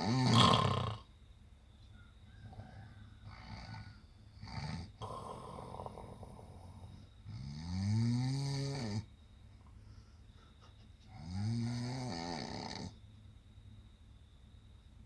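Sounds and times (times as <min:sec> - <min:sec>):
man snoring: 0:00.0 - 0:01.0, 0:04.4 - 0:09.0, 0:11.3 - 0:12.9.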